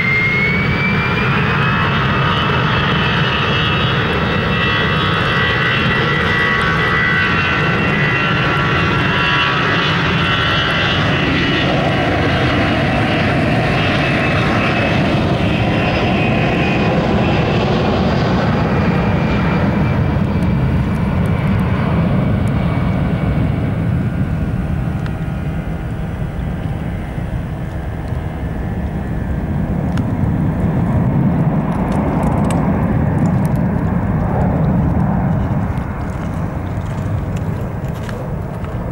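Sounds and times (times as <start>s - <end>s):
jet engine roar: 0.0s - 38.9s.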